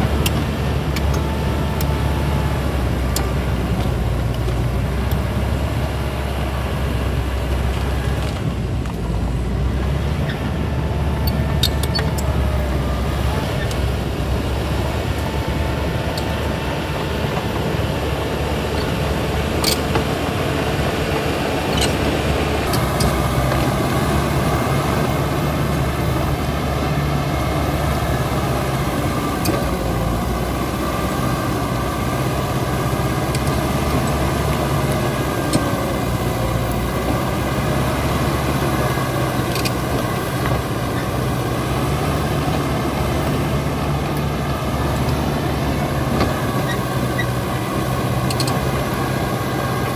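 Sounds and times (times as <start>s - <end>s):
bulldozer diesel engine running: 0.0s - 49.9s.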